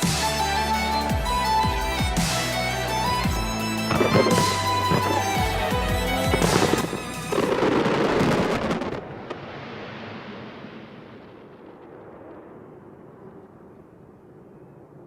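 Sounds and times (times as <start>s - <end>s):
fireworks booming and crackling: 3.9s - 14.6s.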